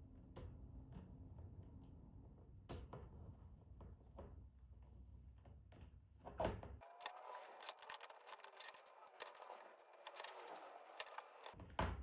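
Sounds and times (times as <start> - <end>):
plastic parts clicking and rustling: 6.8 - 11.6.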